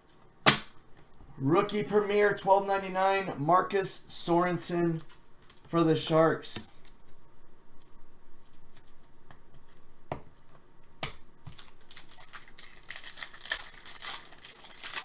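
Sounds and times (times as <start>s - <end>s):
foil wrapper crinkling and tearing: 11.4s - 15.0s.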